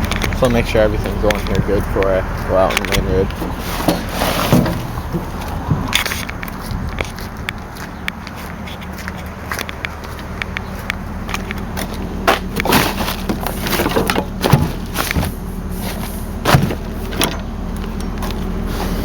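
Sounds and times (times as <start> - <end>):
truck engine idling: 0.0 - 19.0
sharp knocks and thuds: 1.2 - 15.4, 16.4 - 17.4.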